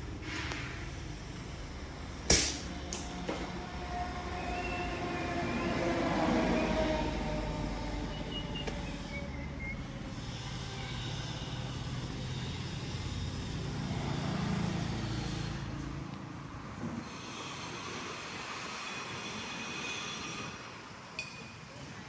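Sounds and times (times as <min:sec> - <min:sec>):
vehicle engine rumbling: 0:00.0 - 0:17.0.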